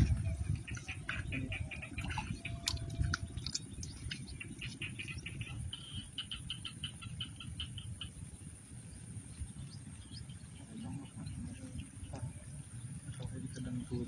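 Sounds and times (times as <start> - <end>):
low rumble: 0.0 - 6.5
high insect hum: 0.0 - 14.0.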